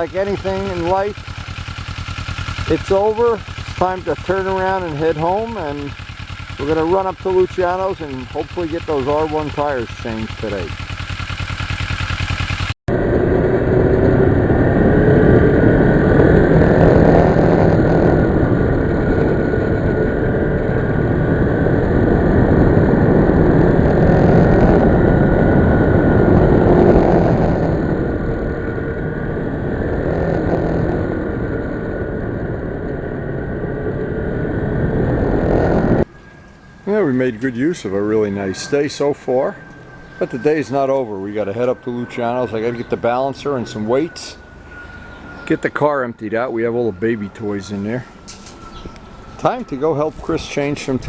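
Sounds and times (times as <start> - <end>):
motorcycle engine running: 0.0 - 36.3
wind rushing on microphone: 12.9 - 36.1, 46.4 - 51.0.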